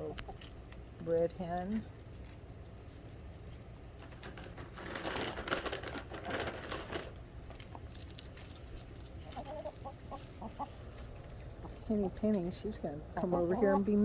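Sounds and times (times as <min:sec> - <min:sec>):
crackling rustling noise: 0:01.9 - 0:12.4
hen clucking softly: 0:09.2 - 0:12.2, 0:13.2 - 0:14.0.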